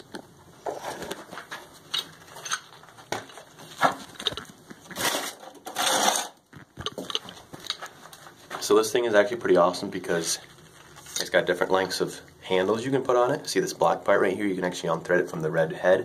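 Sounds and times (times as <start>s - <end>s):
rustling scrapes: 0.6s - 6.4s
hand tools clattering: 1.9s - 7.8s.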